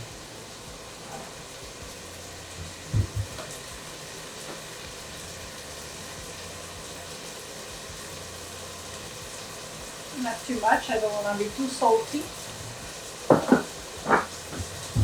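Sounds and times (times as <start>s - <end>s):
food sizzling in hot pan: 0.0s - 15.0s
dull thumps: 2.6s - 3.5s, 13.3s - 15.0s.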